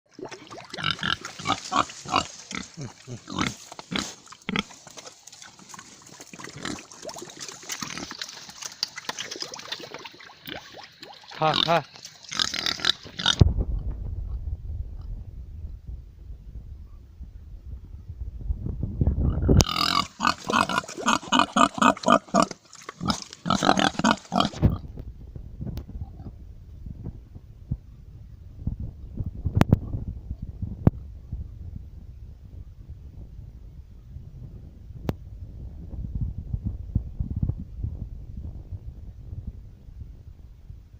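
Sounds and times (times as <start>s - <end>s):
pig grunting: 0.7s - 4.8s, 11.4s - 13.4s, 19.6s - 24.8s
person calling pigs: 1.5s - 4.2s, 11.3s - 11.9s.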